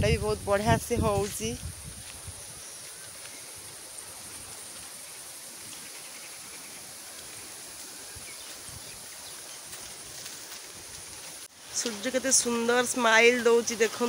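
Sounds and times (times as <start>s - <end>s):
breeze rustling leaves: 0.0s - 14.0s
high insect drone: 1.6s - 10.0s.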